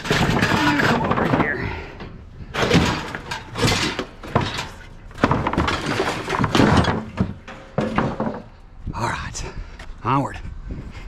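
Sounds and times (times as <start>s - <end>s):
scrap items knocking and clattering: 0.0s - 8.5s.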